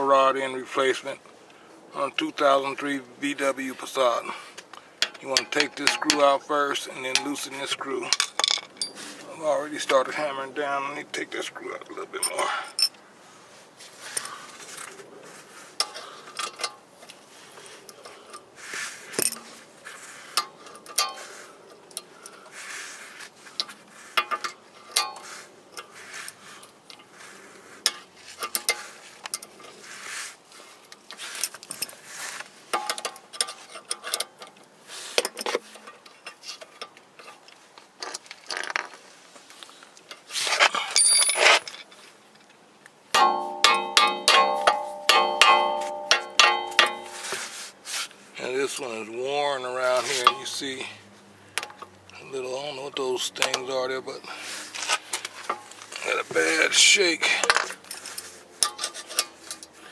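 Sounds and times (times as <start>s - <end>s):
hand tools clinking on metal: 5.0s - 9.0s, 12.1s - 13.0s, 20.3s - 22.4s, 23.6s - 27.1s, 27.8s - 29.8s, 40.5s - 42.0s, 43.1s - 47.6s, 48.5s - 50.9s, 54.7s - 59.9s.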